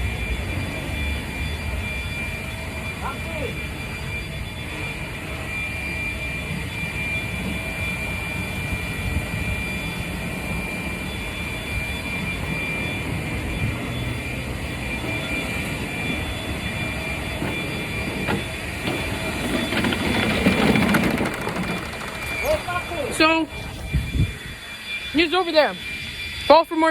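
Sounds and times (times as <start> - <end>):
lawn mower shredding leaves: 12.4 - 23.4.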